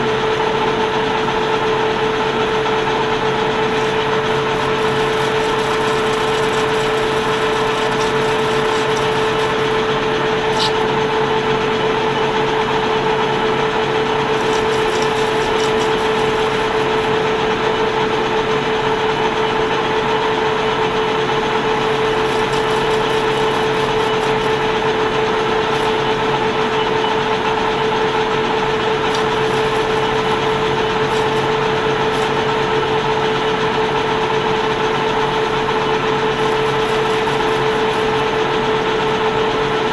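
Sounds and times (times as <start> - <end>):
metal lathe humming and whining: 0.0 - 39.9.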